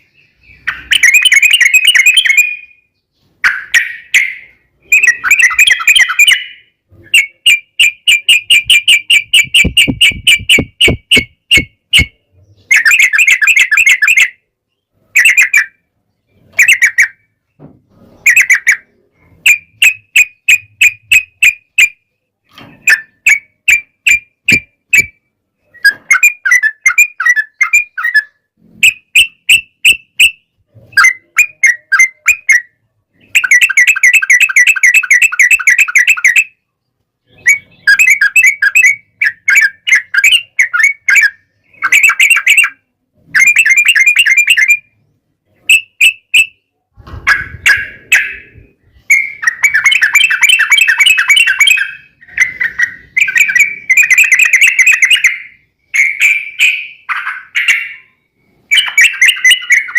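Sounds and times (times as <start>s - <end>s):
birds singing bubbly chattering phrases: 3.4s - 17.3s, 47.3s - 59.9s.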